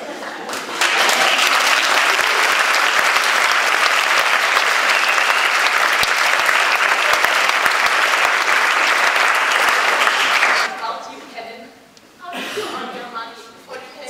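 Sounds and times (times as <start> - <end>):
audience applauding: 0.5 - 10.7.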